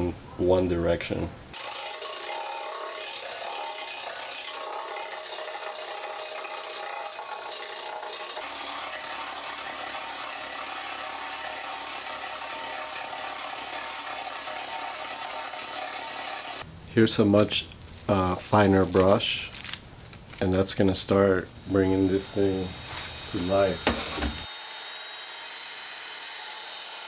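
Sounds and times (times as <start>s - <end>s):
wire brush scrubbing metal: 1.6s - 16.6s, 21.7s - 24.3s.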